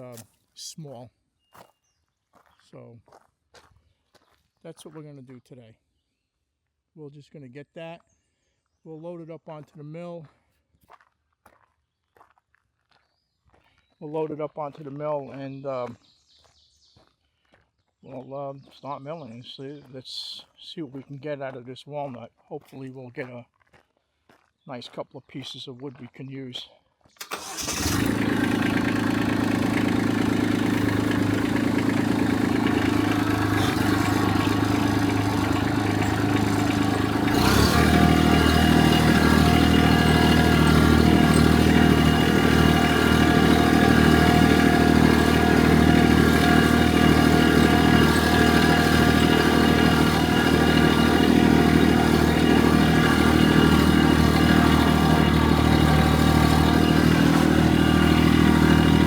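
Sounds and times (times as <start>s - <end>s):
engine running: 27.2s - 59.0s.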